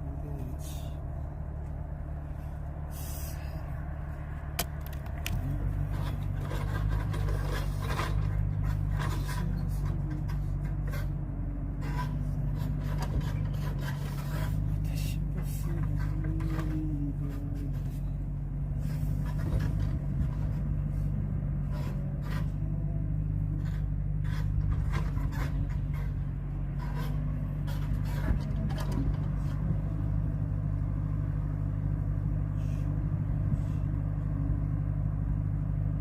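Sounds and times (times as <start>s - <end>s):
engine running: 0.0s - 36.0s
scraping and clicking: 4.6s - 11.2s, 11.8s - 18.2s, 21.6s - 22.7s, 23.4s - 29.7s.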